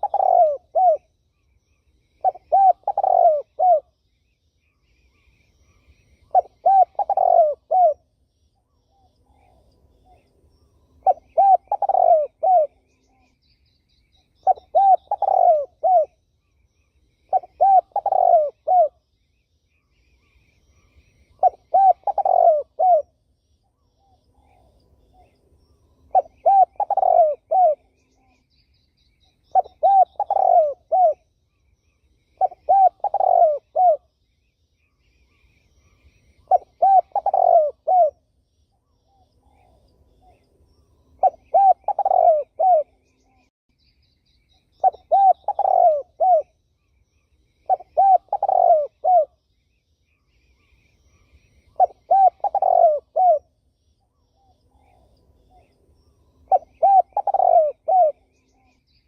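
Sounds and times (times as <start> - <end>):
dove cooing: 0.0 - 1.1, 2.2 - 4.0, 6.2 - 8.1, 11.0 - 13.3, 14.4 - 16.2, 17.3 - 19.0, 20.8 - 23.2, 26.1 - 28.4, 29.5 - 31.2, 32.4 - 34.1, 35.9 - 38.2, 41.2 - 43.4, 44.8 - 46.6, 47.6 - 49.4, 51.1 - 53.5, 56.4 - 58.7
small birds chirping: 0.0 - 59.0.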